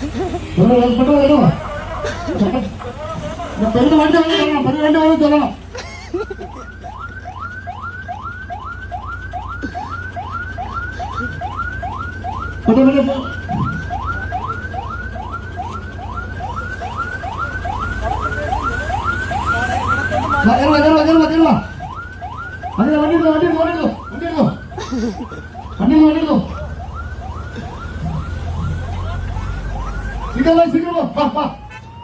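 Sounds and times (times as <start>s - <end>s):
electronic siren whooping: 0.0s - 32.0s.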